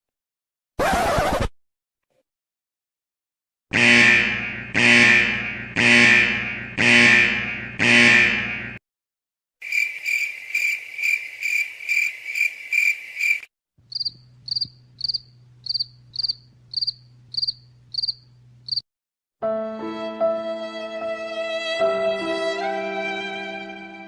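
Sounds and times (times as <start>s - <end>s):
cricket chirping: 9.6s - 18.8s
low steady hum: 14.2s - 18.7s.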